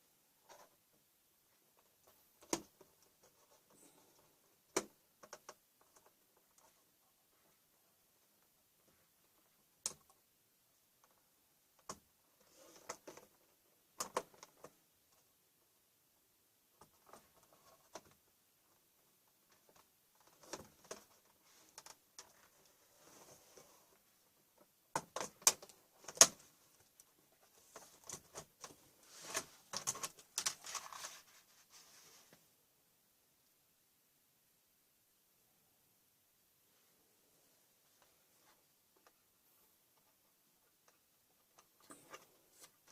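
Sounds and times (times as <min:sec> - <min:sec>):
soft rustle: 0:16.8 - 0:24.8, 0:25.7 - 0:32.6
plastic clicks and scraping: 0:24.9 - 0:31.2.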